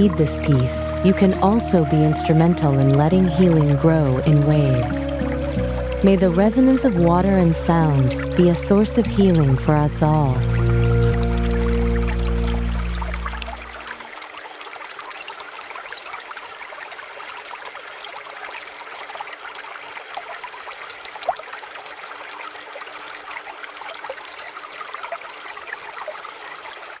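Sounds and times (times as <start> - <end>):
water plop: 0.0 - 13.9
water trickling and burbling: 0.0 - 27.0.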